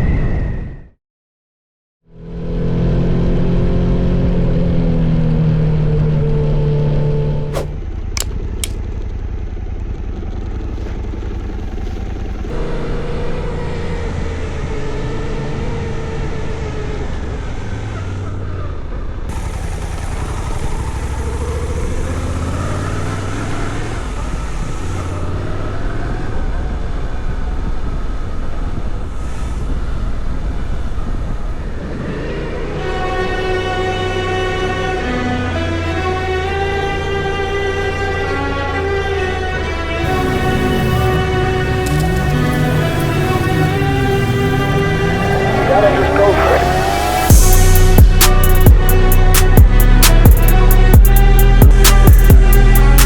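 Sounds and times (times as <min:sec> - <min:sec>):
wind and road noise: 0:02.4 - 0:53.0
short clicks: 0:07.5 - 0:08.8
motorcycle engine running: 0:07.5 - 0:14.4, 0:19.3 - 0:25.6, 0:34.8 - 0:53.0.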